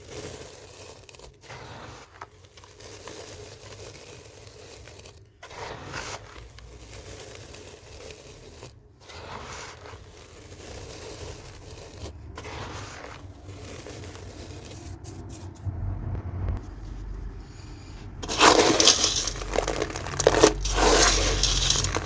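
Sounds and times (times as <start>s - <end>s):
cement chunks crumbling: 0.0s - 15.0s, 18.2s - 22.0s.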